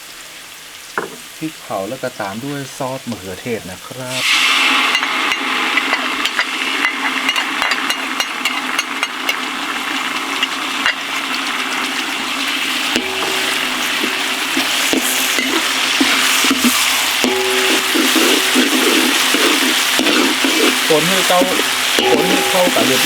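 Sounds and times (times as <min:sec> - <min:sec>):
sauce sizzling in a hot pan: 0:00.0 - 0:23.0
spatula scraping a pan: 0:04.2 - 0:09.4, 0:12.8 - 0:23.0
background music: 0:20.9 - 0:23.0.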